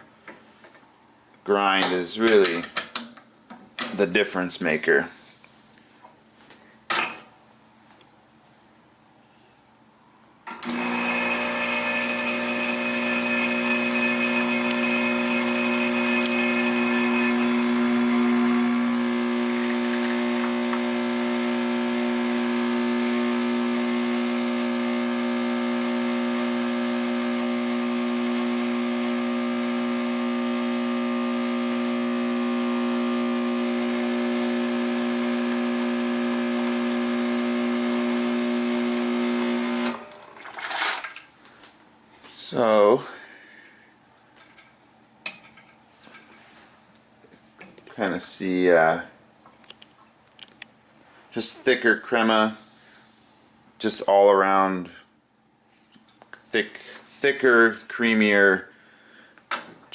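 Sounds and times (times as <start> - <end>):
espresso machine pump humming: 10.6 - 40.0.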